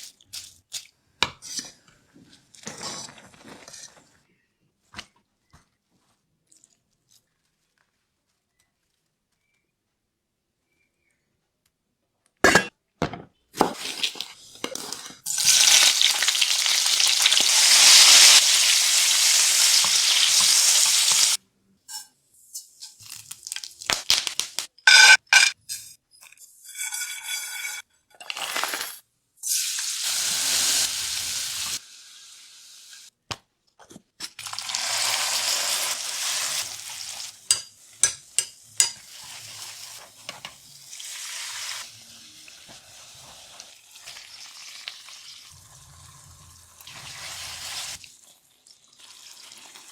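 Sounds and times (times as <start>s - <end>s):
hot oil sizzling in a pan: 15.3s - 21.4s, 29.4s - 33.1s, 34.4s - 49.9s
metal utensil clinking on pot: 24.9s - 27.8s, 37.5s - 39.1s.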